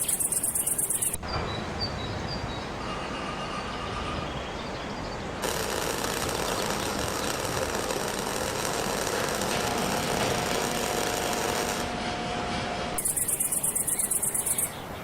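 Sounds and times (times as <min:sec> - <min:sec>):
train knocking rattle: 0:05.4 - 0:15.0.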